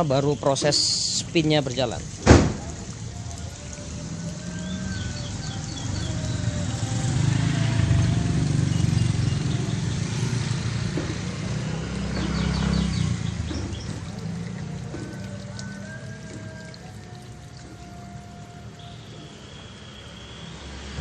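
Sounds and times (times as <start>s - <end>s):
washing machine draining water: 0.0s - 6.8s, 10.8s - 19.4s.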